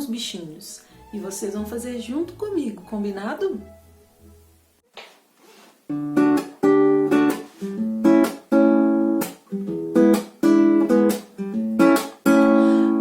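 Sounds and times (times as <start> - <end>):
acoustic guitar strumming chords: 5.9 - 13.0.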